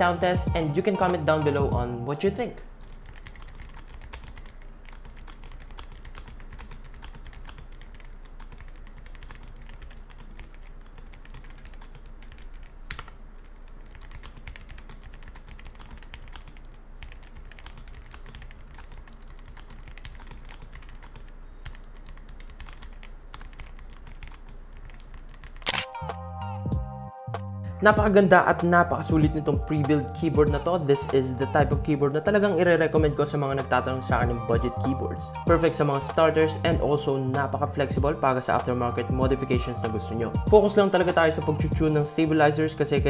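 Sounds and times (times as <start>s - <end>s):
fast mechanical keyboard typing: 2.5s - 25.8s.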